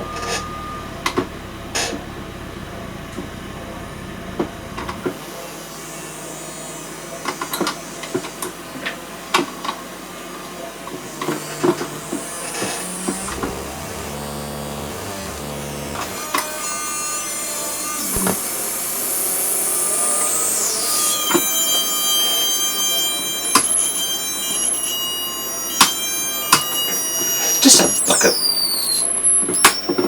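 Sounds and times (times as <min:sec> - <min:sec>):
electronic drone of fixed tones: 0:18.1 - 0:30.0.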